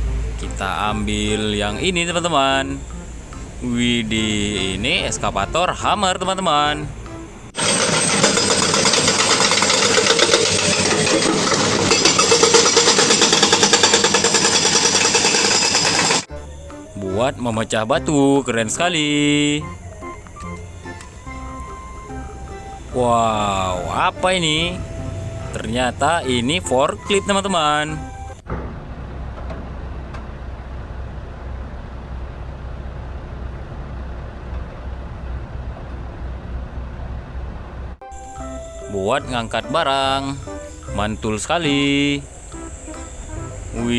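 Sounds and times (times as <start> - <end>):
noisy hiss: 0.0 - 7.6, 38.1 - 43.9
excavator engine running: 0.0 - 43.9
hydraulic breaker hammer pounding: 7.6 - 16.3.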